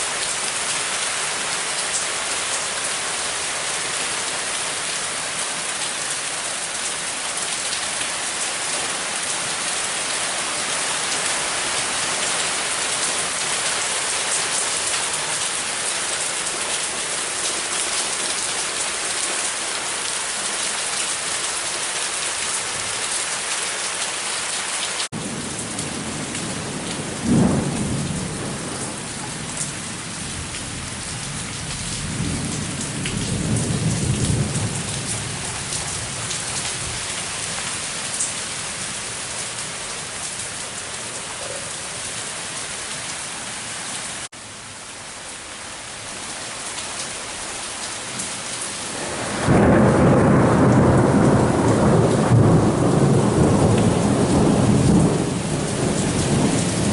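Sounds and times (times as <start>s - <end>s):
heavy rain falling: 0.0s - 56.9s
thunder rumbling: 25.2s - 37.0s, 48.9s - 56.9s.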